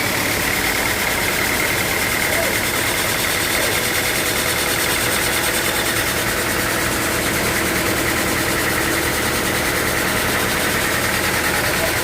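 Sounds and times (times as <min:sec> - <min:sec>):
sawmill machinery drone: 0:00.0 - 0:12.0.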